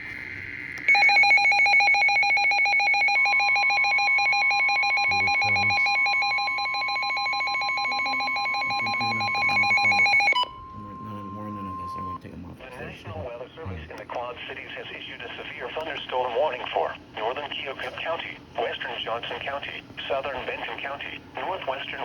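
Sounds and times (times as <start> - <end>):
pulsing electronic alarm: 0.0 - 12.2
steady warning tone: 0.0 - 13.2.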